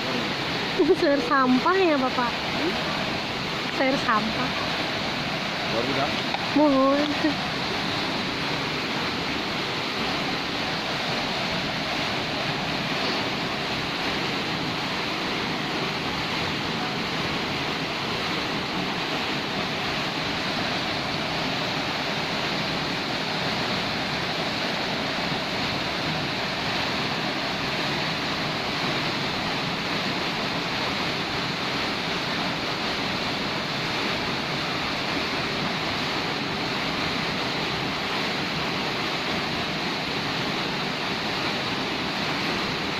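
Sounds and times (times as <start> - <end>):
waterfall rushing: 0.0 - 42.9.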